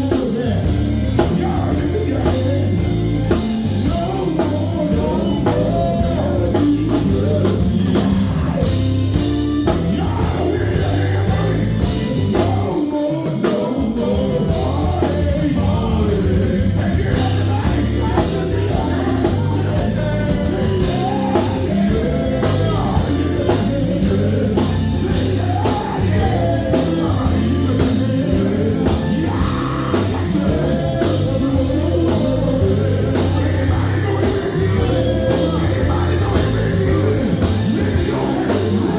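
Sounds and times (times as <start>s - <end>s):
gospel group singing: 0.0s - 38.9s
live band with drums: 0.0s - 38.9s.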